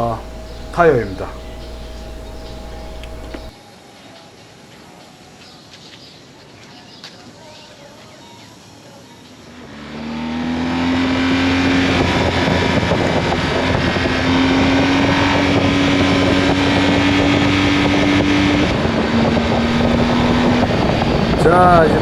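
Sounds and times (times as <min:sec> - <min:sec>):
motorcycle engine running: 0:00.0 - 0:03.5, 0:19.6 - 0:22.0
wind and road noise: 0:11.4 - 0:22.0.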